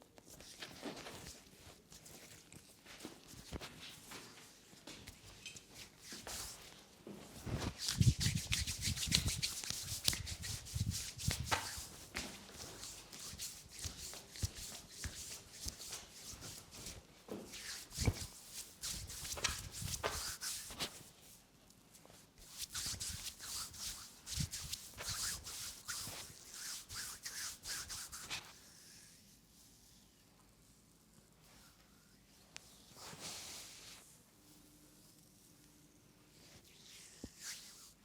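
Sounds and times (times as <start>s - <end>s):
hands brushing over skin: 5.8s - 6.7s, 7.4s - 21.1s, 22.4s - 28.6s.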